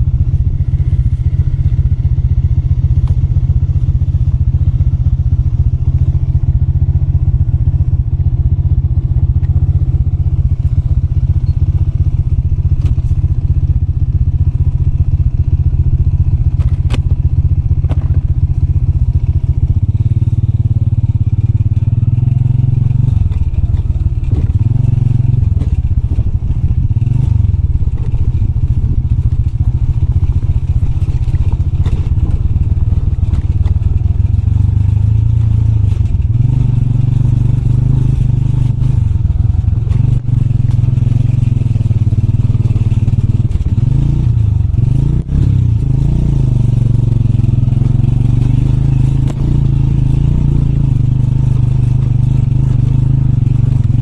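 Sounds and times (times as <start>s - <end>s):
motorbike engine revving: 16.4s - 54.0s
sharp knocks and rattles: 17.8s - 18.6s, 21.8s - 54.0s.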